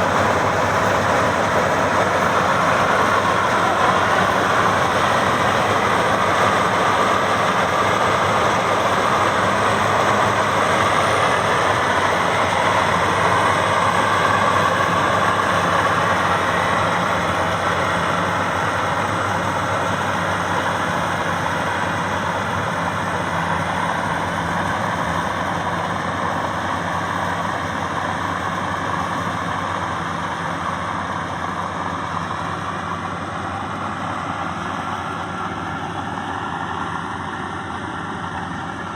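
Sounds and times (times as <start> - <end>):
combine harvester engine running: 0.0 - 38.9.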